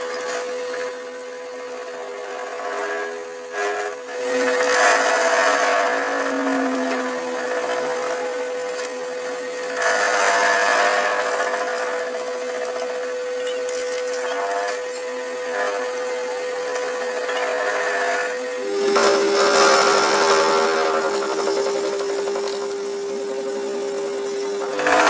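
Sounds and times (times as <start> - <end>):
harsh tool on metal noise: 3.6 - 9.0, 18.6 - 25.0
machine humming: 4.0 - 9.6, 18.4 - 25.0.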